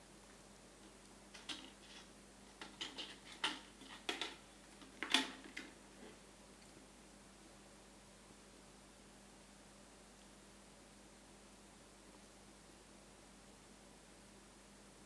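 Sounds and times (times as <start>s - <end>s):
plastic cat toy clattering: 1.4s - 4.4s.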